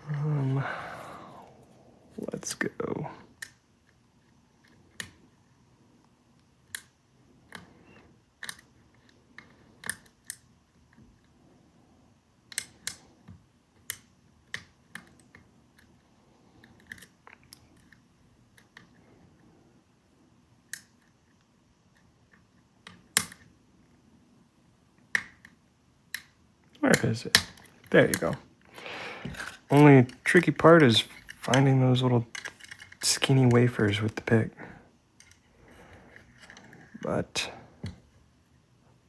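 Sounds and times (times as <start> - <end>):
lock pick clicking and scraping: 8.4 - 10.5, 16.6 - 19.0, 22.0 - 23.5, 29.2 - 34.4, 35.2 - 37.0.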